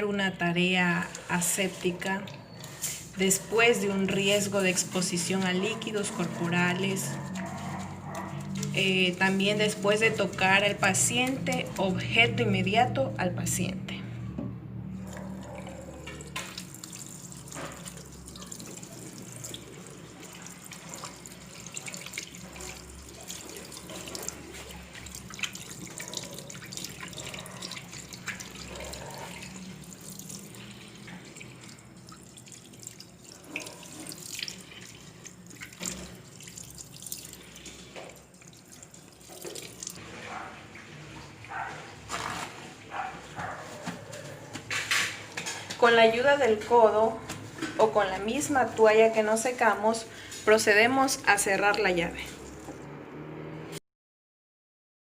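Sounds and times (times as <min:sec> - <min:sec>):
hands washing and splashing: 0:00.9 - 0:12.6, 0:15.0 - 0:53.0
tap water running into sink: 0:15.1 - 0:40.0, 0:51.6 - 0:52.9.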